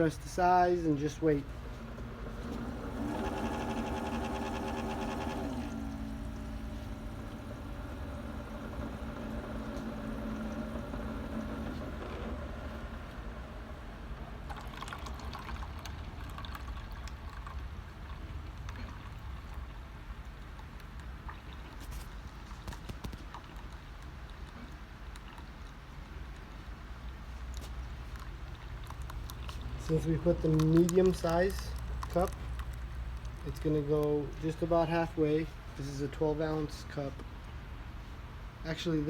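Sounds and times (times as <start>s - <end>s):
coffee maker pump humming: 0.0s - 20.0s, 27.1s - 37.4s
gurgles and sputters: 1.4s - 12.3s
coffee pouring into cup: 14.4s - 19.8s.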